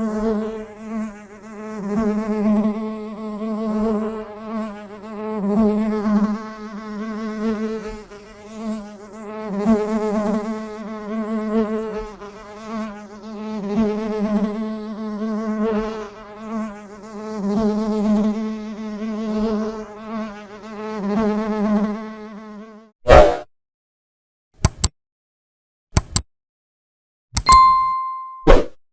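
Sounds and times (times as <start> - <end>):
bee buzzing: 0.1 - 22.9.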